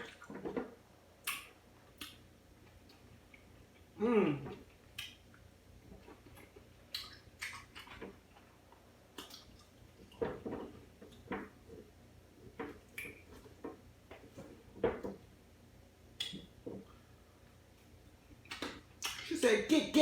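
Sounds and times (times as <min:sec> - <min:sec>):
chewing with wet mouth smacks: 0:04.5 - 0:10.2, 0:18.4 - 0:19.3.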